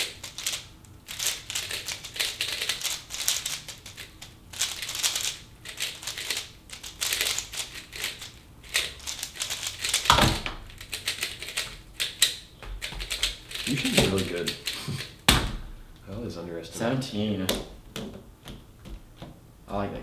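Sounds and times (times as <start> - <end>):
plastic puzzle cube clicking: 0.0 - 15.1
louder thump: 15.3 - 16.0.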